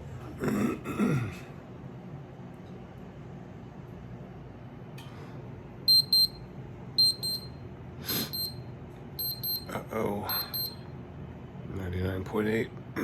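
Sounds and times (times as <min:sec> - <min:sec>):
digital thermometer beeping: 0:05.9 - 0:07.6, 0:08.2 - 0:09.7, 0:10.3 - 0:10.8.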